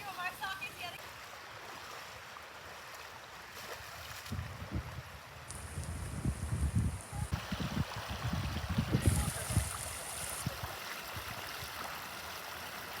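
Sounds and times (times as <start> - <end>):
rainwater running and trickling: 3.9 - 13.0
wind buffeting microphone: 4.3 - 11.7.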